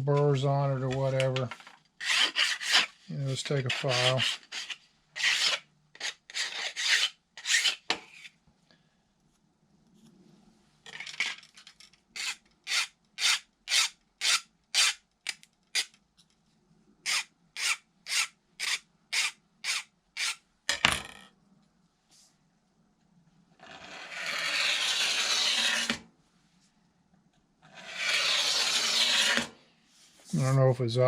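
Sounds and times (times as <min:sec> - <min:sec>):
hand file strokes on metal: 0:02.0 - 0:07.8, 0:17.1 - 0:20.4, 0:27.9 - 0:29.5.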